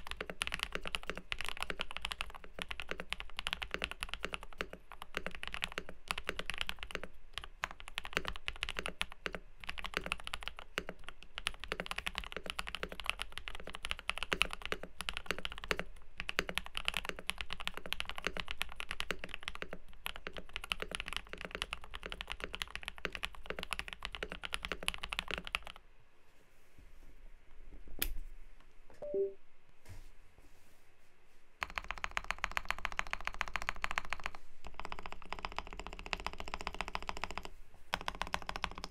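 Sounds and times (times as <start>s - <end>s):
mechanical keyboard typing: 0.0s - 25.8s, 31.6s - 38.9s.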